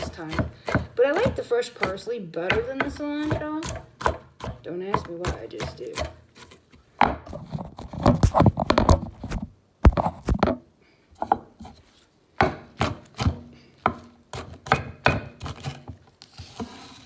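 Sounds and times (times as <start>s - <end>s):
knife chopping on cutting board: 0.0s - 7.4s, 8.0s - 10.6s, 12.4s - 16.0s.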